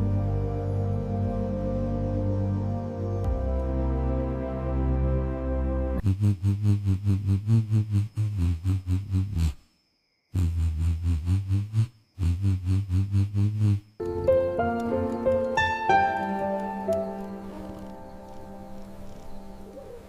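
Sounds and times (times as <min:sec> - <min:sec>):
synth chord: 0:00.0 - 0:06.0.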